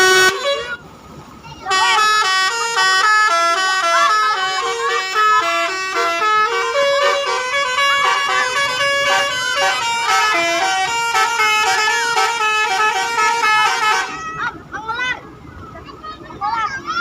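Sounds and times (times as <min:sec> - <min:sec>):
bus musical air horns: 0:00.0 - 0:01.0, 0:01.6 - 0:14.4.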